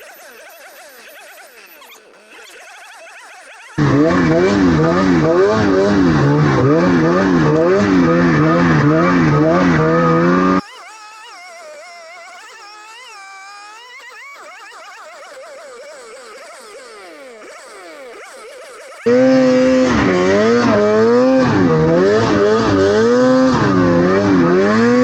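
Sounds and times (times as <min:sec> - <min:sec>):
snowmobile engine revving: 0:03.8 - 0:10.6, 0:19.1 - 0:25.0.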